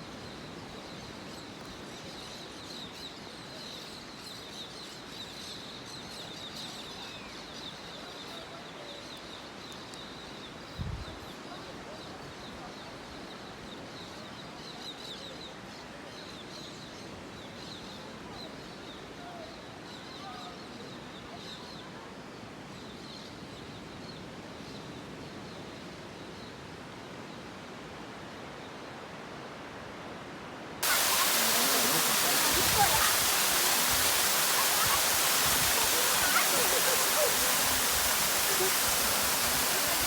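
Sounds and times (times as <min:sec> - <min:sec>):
high bird chirps: 0:30.8 - 0:40.0
waterfall rushing: 0:30.8 - 0:40.0.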